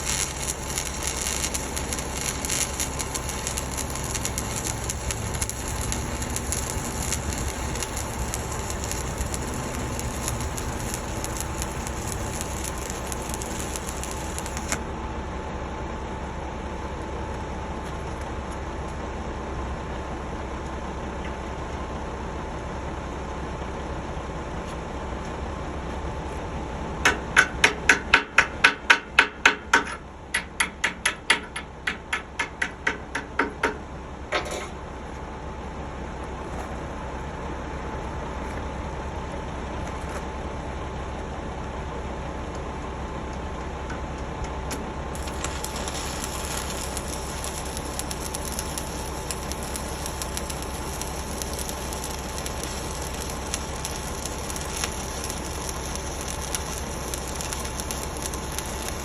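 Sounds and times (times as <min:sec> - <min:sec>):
welding arc crackling hiss: 0:00.0 - 0:14.9, 0:45.2 - 0:59.0
hammer striking steel: 0:27.1 - 0:33.8.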